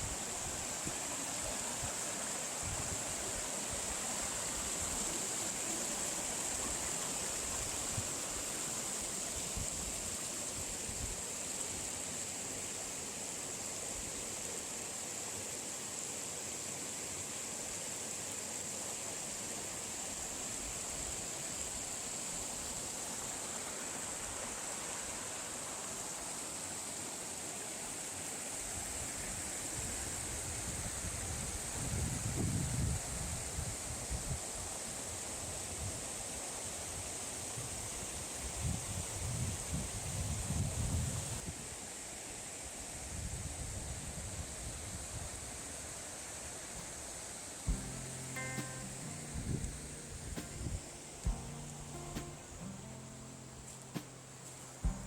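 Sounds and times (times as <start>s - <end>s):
stream water rushing: 0.0s - 29.8s, 46.2s - 55.0s.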